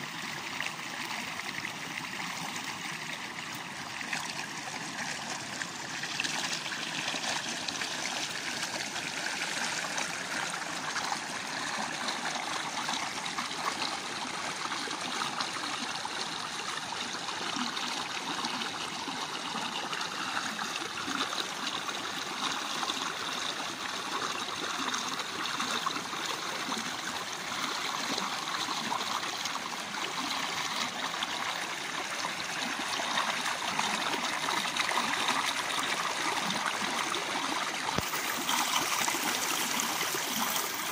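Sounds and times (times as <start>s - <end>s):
water splashing over rocks: 32.3s - 40.9s.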